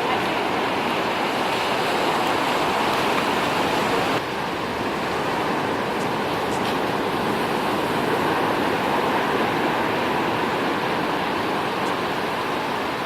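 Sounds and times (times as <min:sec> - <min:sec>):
surf breaking on beach: 0:00.0 - 0:13.0.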